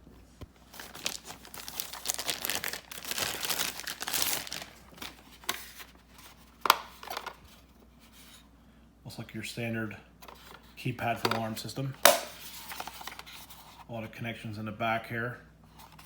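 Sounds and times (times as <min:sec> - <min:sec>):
packaging crinkling and rustling: 0:00.2 - 0:07.6.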